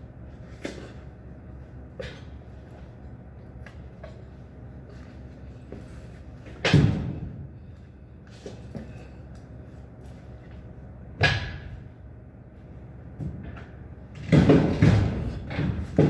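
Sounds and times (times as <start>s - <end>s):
heavy knocks and clatter: 13.2s - 16.0s.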